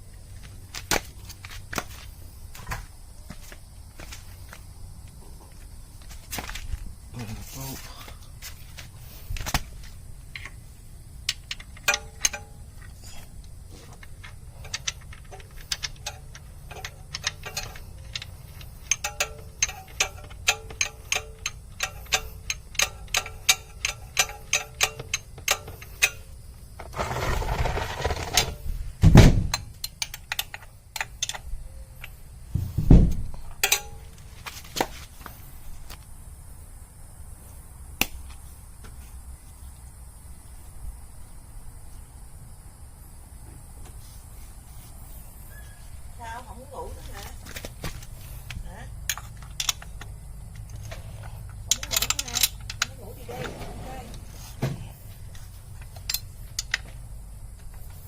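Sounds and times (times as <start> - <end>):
rustle: 0.0 - 58.0
ratchet wrench clicking: 14.0 - 26.4, 51.7 - 52.9.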